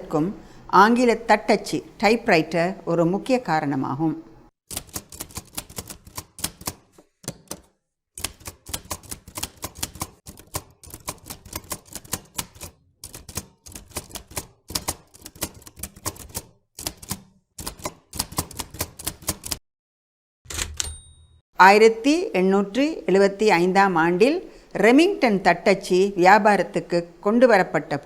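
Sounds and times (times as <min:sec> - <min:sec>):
typewriter keys clacking: 0:04.7 - 0:19.6, 0:20.5 - 0:21.1.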